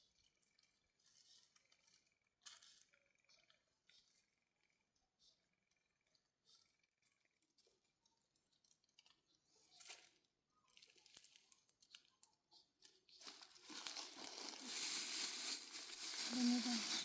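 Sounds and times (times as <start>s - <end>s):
rustling and crinkling: 8.9s - 12.2s, 12.8s - 17.0s.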